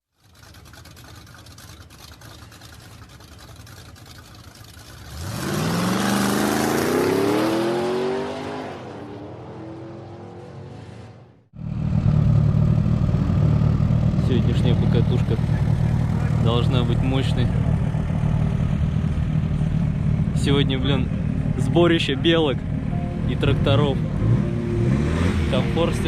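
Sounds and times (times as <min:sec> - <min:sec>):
vehicle engine revving: 0:04.7 - 0:26.0
low engine drone: 0:11.3 - 0:26.0.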